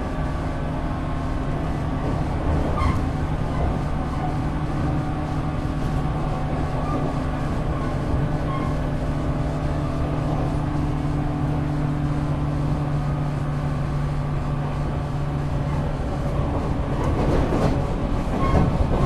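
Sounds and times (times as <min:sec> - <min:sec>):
train traction motor hum: 0:00.0 - 0:19.0
rail clatter: 0:01.4 - 0:11.0, 0:14.5 - 0:19.0.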